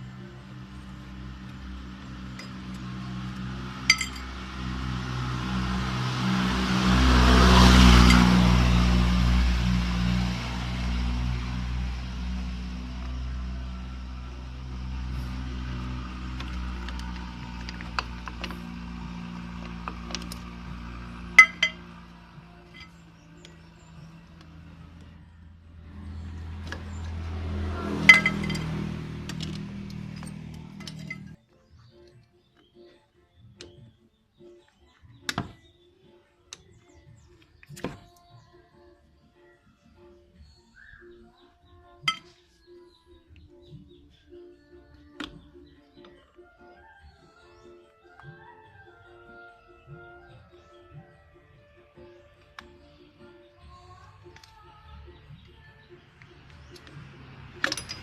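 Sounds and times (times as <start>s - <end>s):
metal tools clinking: 3.9s - 4.3s, 21.4s - 21.8s, 22.7s - 23.0s, 28.1s - 31.4s, 57.6s - 58.0s
sharp metallic clink: 3.9s - 4.4s, 21.4s - 22.0s, 28.1s - 28.8s.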